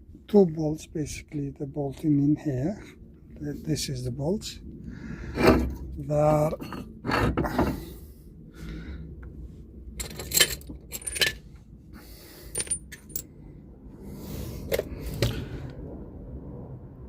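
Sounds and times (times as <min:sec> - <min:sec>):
metal parts clinking: 0:10.0 - 0:11.4, 0:12.5 - 0:13.3.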